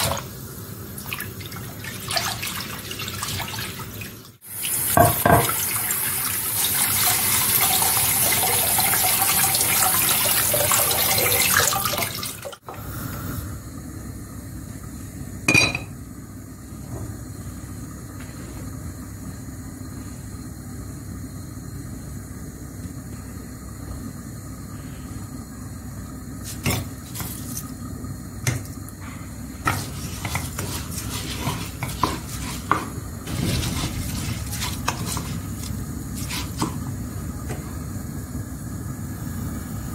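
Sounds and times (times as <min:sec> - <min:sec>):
tap running into a sink: 0:04.9 - 0:05.6
dishes and cutlery clinking: 0:15.5 - 0:15.9.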